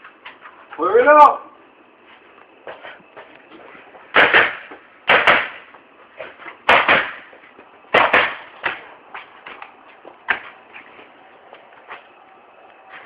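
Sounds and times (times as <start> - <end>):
paintball gun firing: 4.2 - 5.6, 6.7 - 7.3, 7.9 - 8.8.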